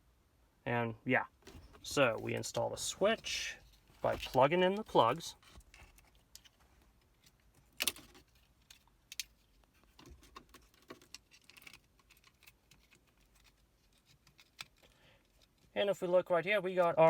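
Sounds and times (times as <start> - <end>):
plastic connectors clicking and rattling: 7.2 - 15.6.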